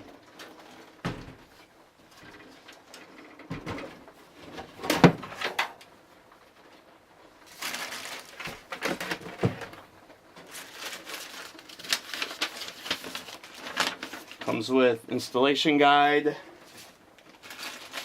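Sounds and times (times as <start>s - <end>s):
scraping and rustling: 6.4s - 14.6s, 16.5s - 18.0s.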